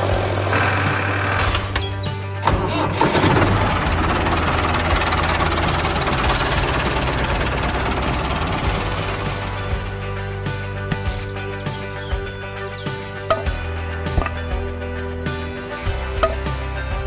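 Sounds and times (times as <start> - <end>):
engine starting and running: 0.0 - 11.3
background music: 0.0 - 17.0
engine starter clicks: 1.0 - 7.7.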